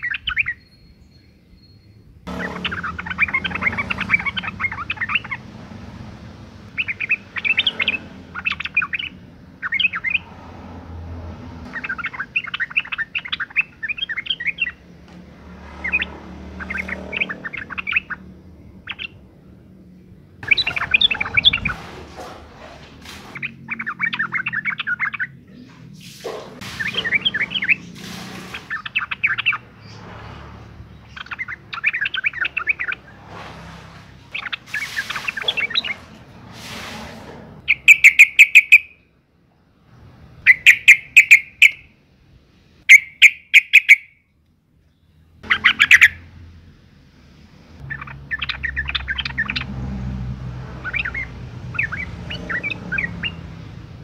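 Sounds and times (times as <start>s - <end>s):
bird chattering call: 2.3s - 5.4s, 6.7s - 10.2s, 11.7s - 14.8s, 20.4s - 21.8s, 37.7s - 39.0s, 40.5s - 41.9s, 42.9s - 44.2s, 45.4s - 46.2s.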